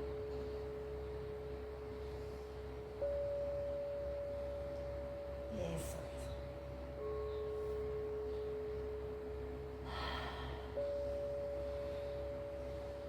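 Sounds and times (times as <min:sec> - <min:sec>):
singing bowl ringing: 0:02.8 - 0:09.8, 0:10.4 - 0:13.0.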